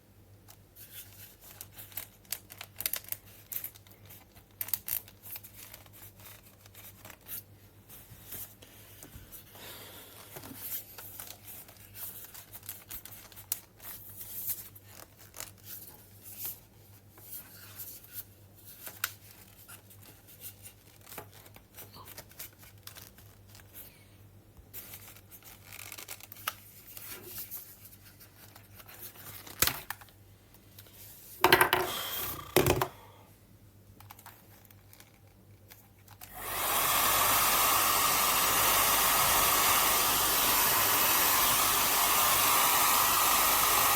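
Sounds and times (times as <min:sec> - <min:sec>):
packaging rustling and tearing: 0:24.8 - 0:30.1.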